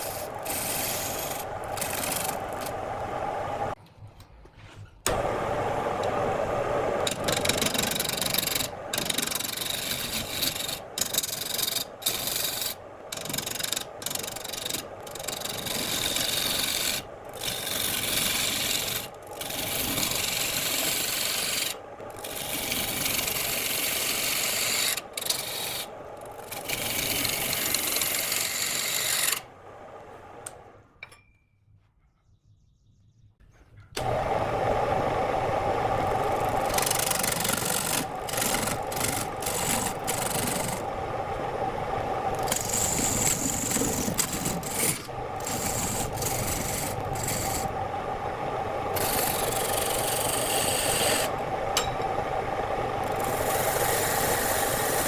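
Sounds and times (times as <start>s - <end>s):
tool rasping on wood: 0.0s - 2.8s, 7.1s - 29.4s, 36.5s - 40.8s, 42.4s - 47.7s, 49.0s - 51.3s.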